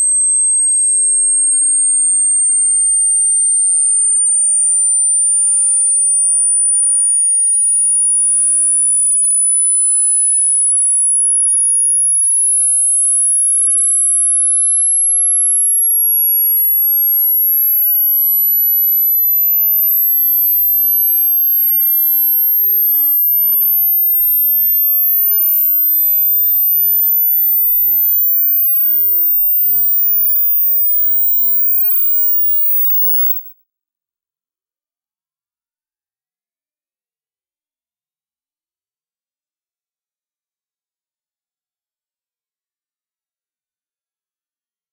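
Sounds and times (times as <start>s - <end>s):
high rising sine tone: 1.9s - 8.0s, 17.5s - 33.5s.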